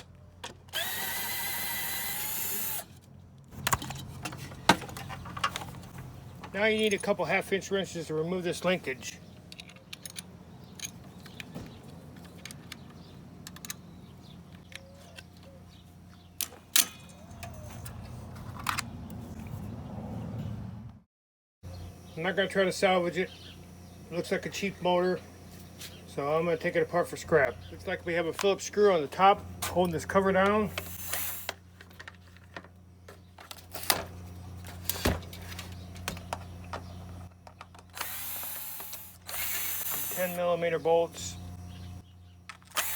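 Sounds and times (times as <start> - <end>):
hand tools clicking on engine parts: 9.0 - 15.6
steady low hum: 21.7 - 42.9.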